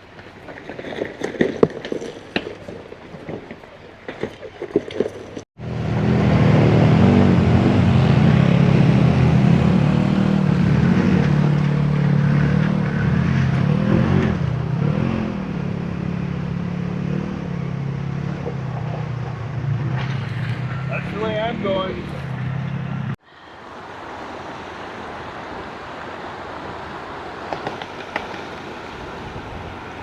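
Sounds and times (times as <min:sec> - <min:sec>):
vehicle engine revving: 0:05.3 - 0:23.2.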